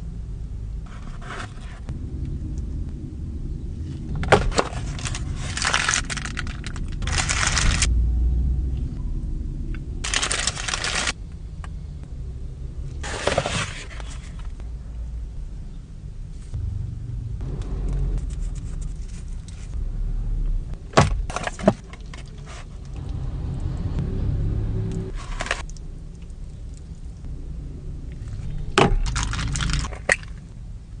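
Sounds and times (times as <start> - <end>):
low car rumble: 0.0 - 31.0.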